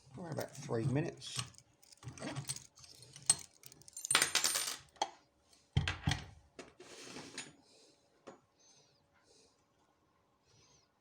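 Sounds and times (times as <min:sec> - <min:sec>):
metal lock parts clinking: 0:00.0 - 0:05.0.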